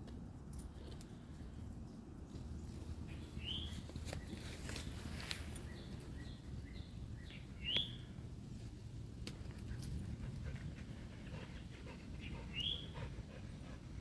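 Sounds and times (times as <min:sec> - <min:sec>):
low outdoor rumble: 0:00.0 - 0:14.0
birds chirping: 0:02.6 - 0:08.2, 0:11.3 - 0:13.4.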